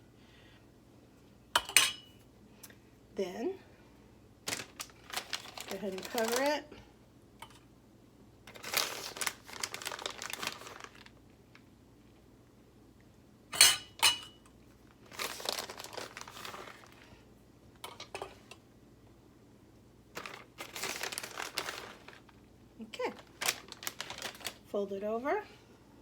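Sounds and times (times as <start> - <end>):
kitchenware clinking: 1.6 - 2.2, 13.5 - 14.5, 17.8 - 18.6
crinkling rustle: 4.4 - 6.7, 8.5 - 11.7, 14.8 - 17.2, 20.1 - 24.8.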